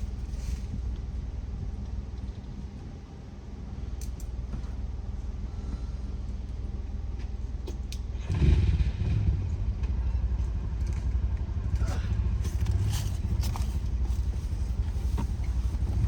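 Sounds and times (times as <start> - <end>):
car engine rumbling: 0.0 - 16.0
light rattles and clicks: 1.7 - 2.9, 9.8 - 16.0.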